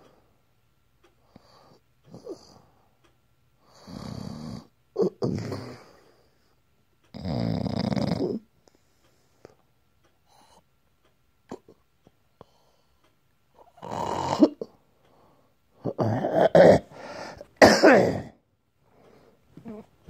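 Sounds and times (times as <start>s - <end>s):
person snoring: 3.7s - 6.0s, 7.1s - 8.4s, 13.7s - 14.7s.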